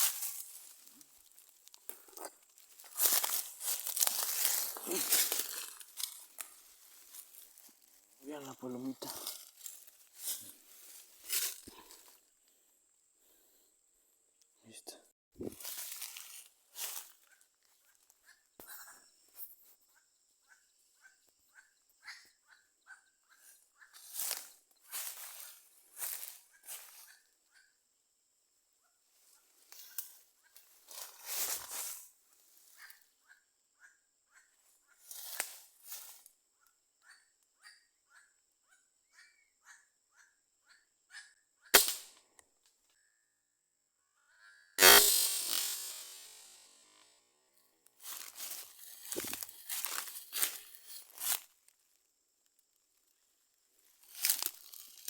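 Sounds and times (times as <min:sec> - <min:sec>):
insect hiss: 0:00.0 - 0:01.9, 0:02.5 - 0:12.2, 0:44.8 - 0:47.1, 0:48.0 - 0:51.5
rustle: 0:00.0 - 0:12.2, 0:15.6 - 0:17.3, 0:24.0 - 0:27.1, 0:29.6 - 0:32.8, 0:35.0 - 0:36.3, 0:48.0 - 0:51.6, 0:53.8 - 0:55.0
gunshot: 0:41.8 - 0:42.0.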